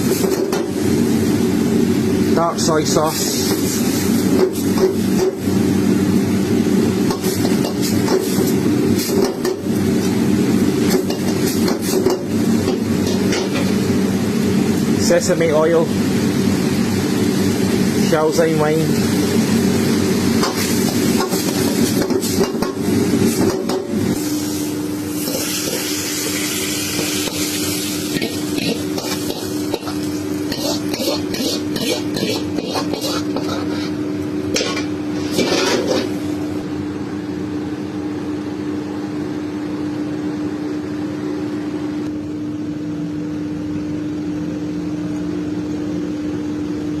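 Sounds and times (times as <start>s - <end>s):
steady hum: 0.0s - 47.0s
chicken sizzling in a pan: 2.7s - 14.8s, 16.0s - 34.0s
spatula clicking and scraping: 28.1s - 34.0s.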